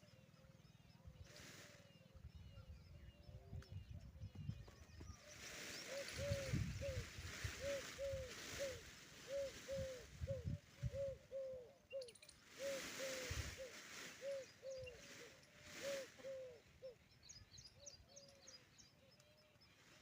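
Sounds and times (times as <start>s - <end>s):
peahen calling: 5.2s - 20.0s
small bird chirping: 7.8s - 12.6s.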